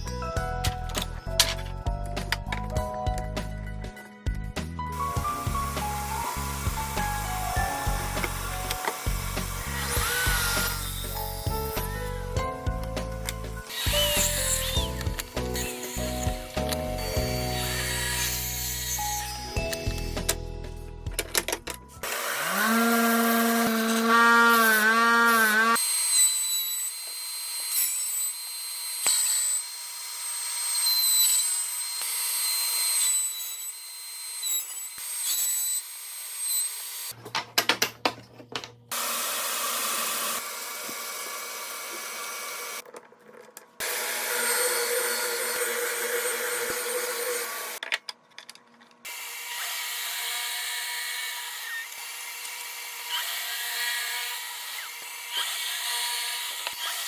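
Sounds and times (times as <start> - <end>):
power tool motor whine: 5.4 - 12.0, 13.6 - 20.2, 22.0 - 37.1, 38.9 - 42.8
high-pitched hissing tool noise: 13.7 - 20.3.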